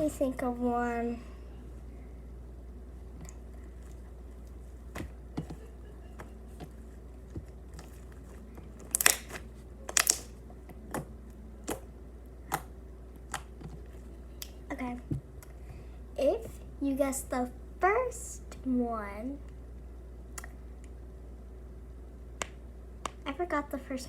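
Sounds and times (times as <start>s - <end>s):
slime clicking and popping: 8.8s - 10.3s, 10.9s - 11.8s, 13.3s - 13.6s.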